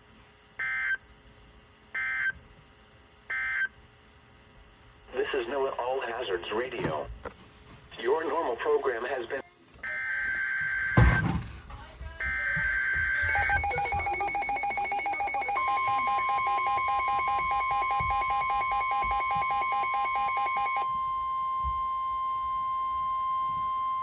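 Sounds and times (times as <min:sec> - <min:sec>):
fast pulsing alarm beep: 0:12.2 - 0:24.0
steady warning alarm tone: 0:12.2 - 0:24.0
harsh digital data tones: 0:12.4 - 0:20.8.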